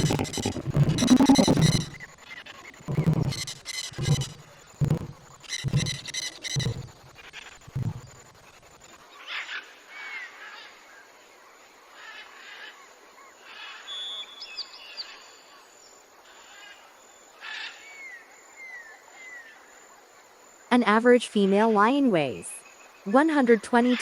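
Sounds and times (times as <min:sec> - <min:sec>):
birds chirping and whistling: 0:00.0 - 0:06.9
faint outdoor ambience: 0:00.0 - 0:24.0.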